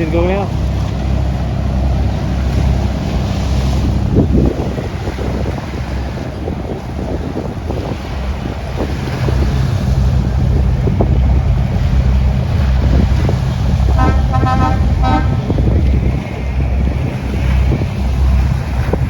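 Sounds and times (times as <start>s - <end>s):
boat engine rumbling: 0.0s - 19.0s
wind buffeting microphone: 0.0s - 19.0s
horn toots: 13.9s - 15.6s.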